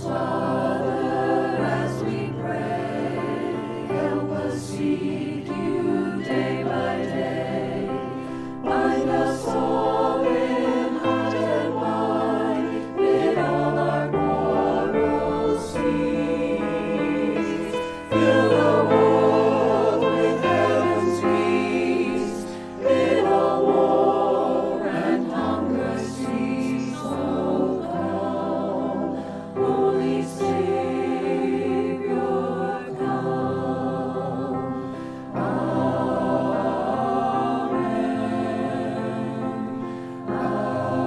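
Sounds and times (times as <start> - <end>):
choir singing a hymn: 0.0 - 41.0.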